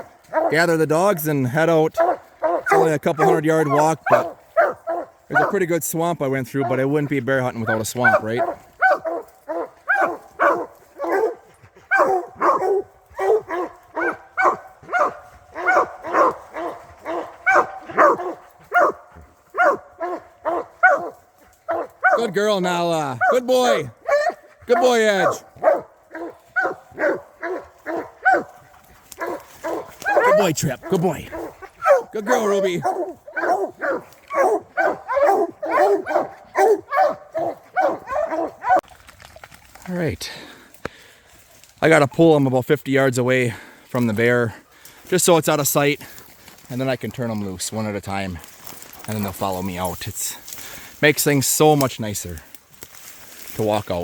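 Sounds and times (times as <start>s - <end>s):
hounds barking: 0.0s - 38.9s.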